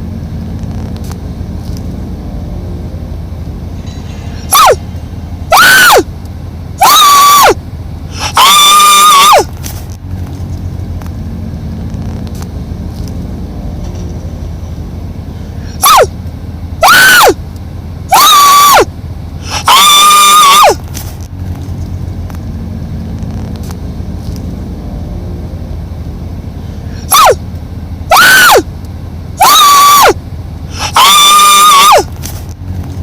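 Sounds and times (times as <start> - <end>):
pet animal calling shrilly: 4.5 - 4.8, 5.5 - 6.1, 6.8 - 7.6, 8.2 - 9.5, 15.8 - 16.1, 16.8 - 17.4, 18.1 - 20.8, 27.0 - 27.4, 28.1 - 28.6, 29.4 - 32.1.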